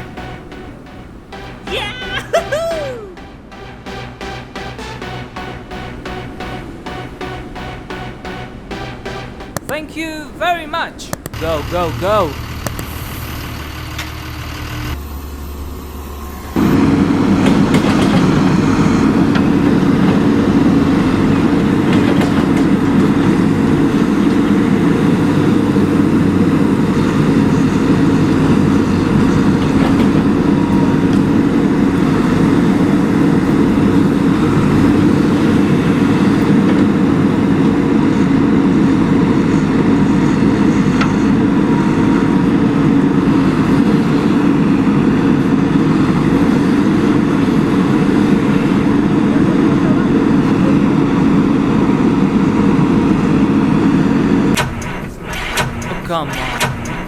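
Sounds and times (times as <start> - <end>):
loud engine-like rumble: 11.7 - 57.0.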